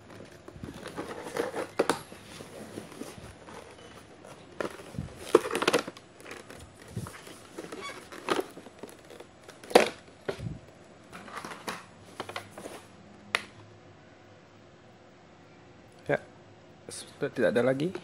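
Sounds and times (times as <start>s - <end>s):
packaging rustling and crinkling: 0.0s - 12.9s.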